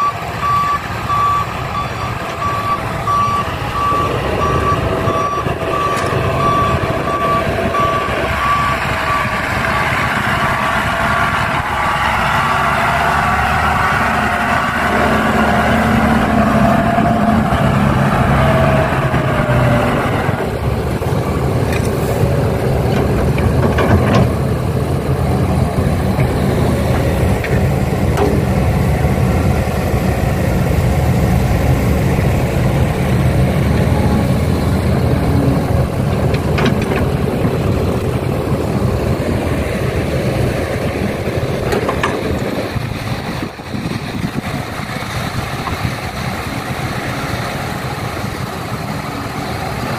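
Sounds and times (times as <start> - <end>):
heavy diesel engine running: 0.0 - 49.9
high-pitched whine: 24.9 - 37.1.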